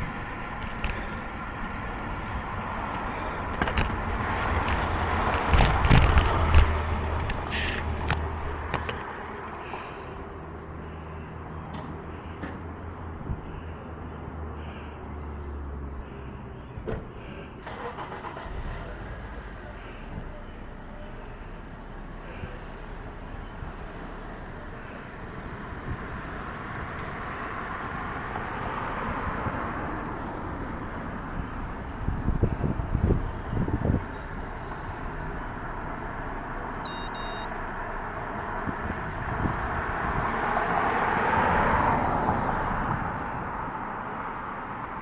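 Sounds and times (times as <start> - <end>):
road traffic passing: 0.0 - 45.0
short electronic beep: 36.8 - 37.5.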